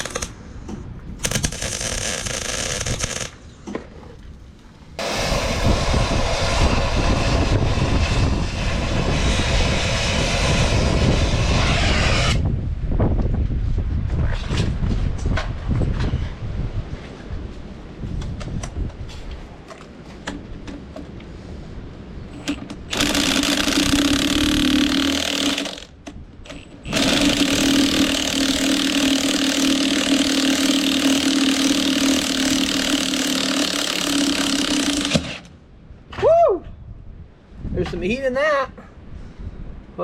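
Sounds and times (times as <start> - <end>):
power tool loosening bolt: 22.4 - 35.5.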